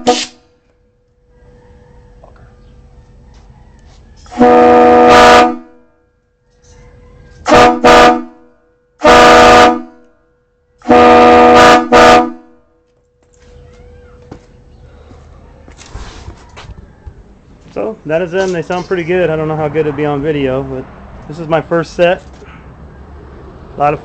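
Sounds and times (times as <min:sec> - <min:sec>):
train horn blasts: 0:00.0 - 0:00.6, 0:04.3 - 0:06.0, 0:07.4 - 0:10.1, 0:10.8 - 0:12.7.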